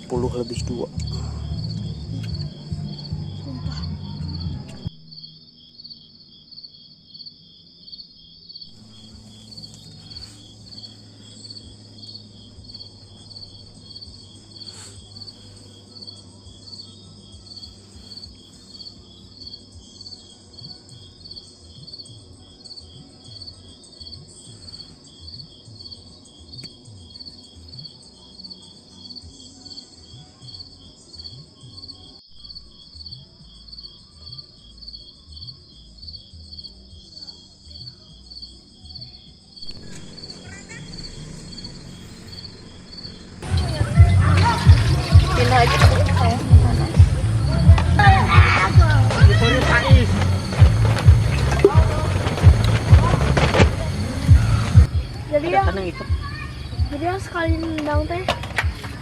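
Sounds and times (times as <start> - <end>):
crickets chirping: 0.0 - 59.0.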